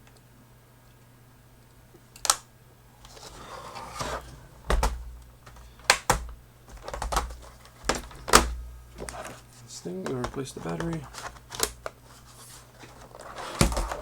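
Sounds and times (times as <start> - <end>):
dull thuds: 3.9 - 9.2
plastic laptop case clicks: 4.7 - 9.3, 10.1 - 12.0, 13.2 - 14.0.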